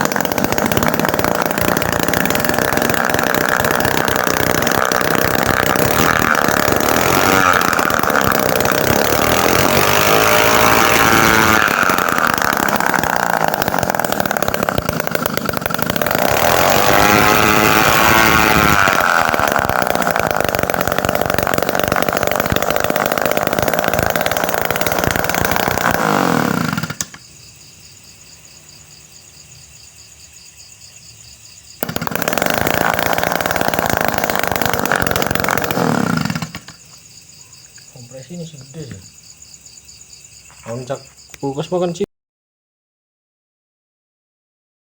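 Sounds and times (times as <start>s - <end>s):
small two-stroke engine buzzing: 0.0s - 27.2s, 31.8s - 36.8s.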